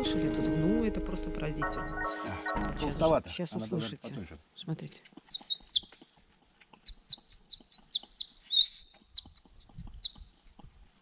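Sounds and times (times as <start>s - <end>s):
bark whistle chirps: 8.5s - 8.8s.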